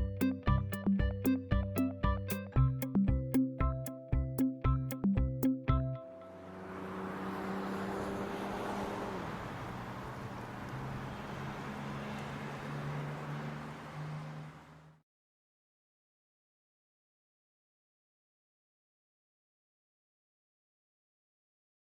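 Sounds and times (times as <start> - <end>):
vehicle engine hum: 5.7 - 15.0.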